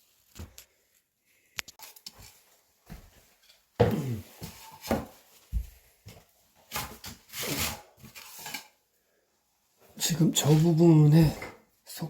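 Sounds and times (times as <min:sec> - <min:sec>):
knocks scrapes and rustles: 0:03.1 - 0:08.8.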